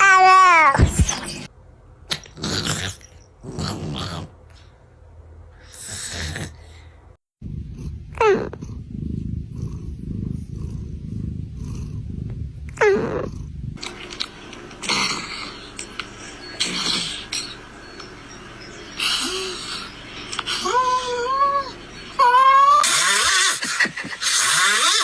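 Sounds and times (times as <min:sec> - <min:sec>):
cat snoring: 0:05.7 - 0:06.8, 0:07.4 - 0:13.8, 0:14.8 - 0:15.7, 0:16.3 - 0:17.6, 0:18.9 - 0:19.9.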